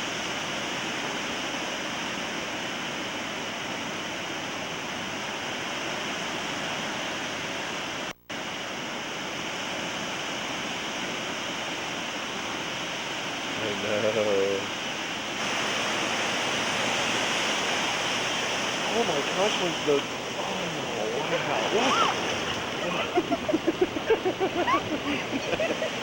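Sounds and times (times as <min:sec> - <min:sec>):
ocean surf breaking: 0:15.2 - 0:26.0.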